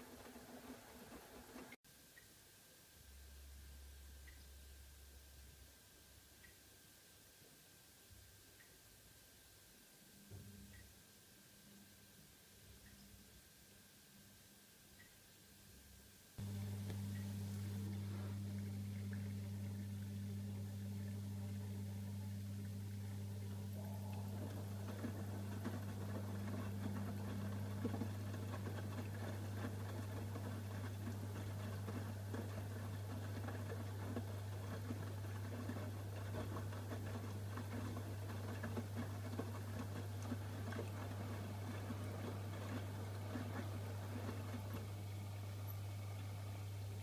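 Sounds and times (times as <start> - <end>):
steady low hum: 16.4 - 47.0
washing machine drum sloshing: 16.4 - 47.0.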